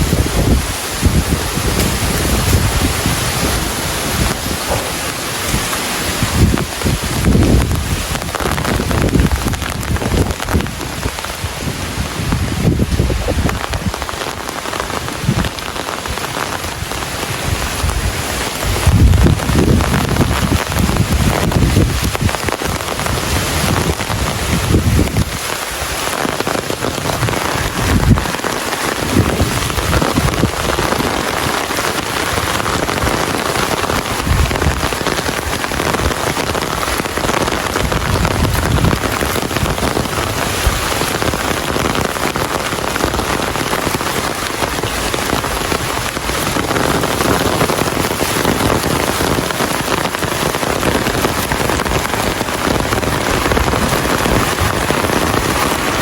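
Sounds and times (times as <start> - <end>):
steady rain: 0.0 - 56.0
low rumbles: 26.2 - 42.2.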